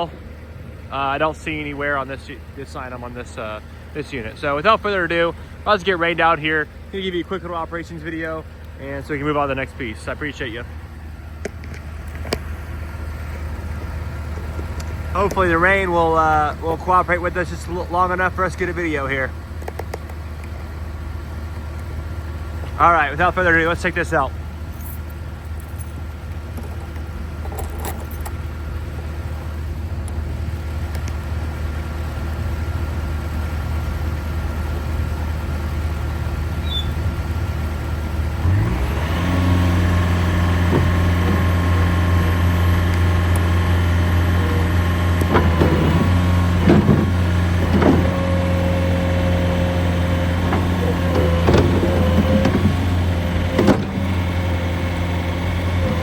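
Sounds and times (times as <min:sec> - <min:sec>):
diesel engine running: 0:00.0 - 0:56.0
machine knocks and clunks: 0:40.6 - 0:41.5, 0:45.2 - 0:48.2, 0:50.4 - 0:54.2.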